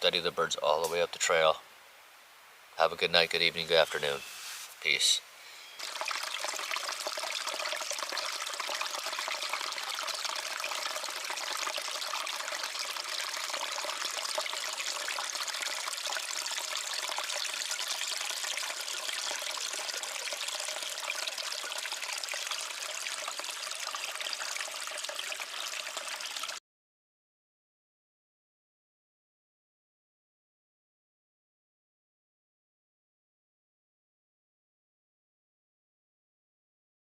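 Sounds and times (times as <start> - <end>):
running water trickling: 3.3 - 26.6.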